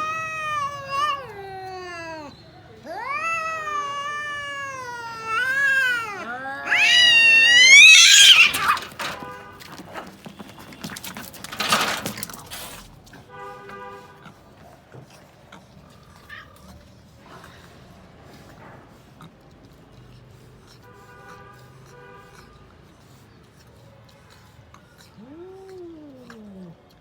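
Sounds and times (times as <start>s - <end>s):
cat screeching: 0.0s - 9.2s
cats yowling: 0.0s - 9.2s, 15.9s - 16.8s, 25.2s - 26.8s.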